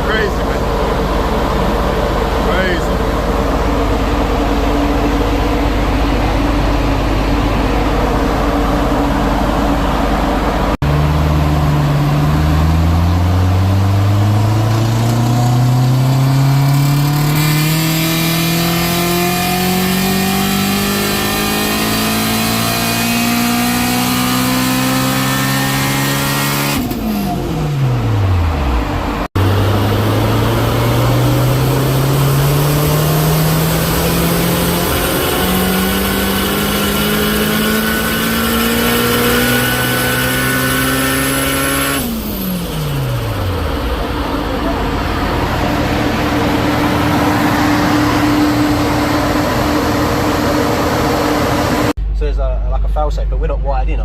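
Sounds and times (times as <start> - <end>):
engine revving on dyno: 0.0 - 52.0.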